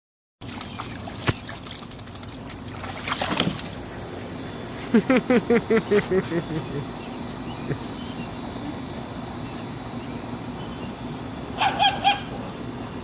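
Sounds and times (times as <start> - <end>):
water splashing and sloshing: 0.4 - 4.0
small dog yapping: 11.6 - 12.4.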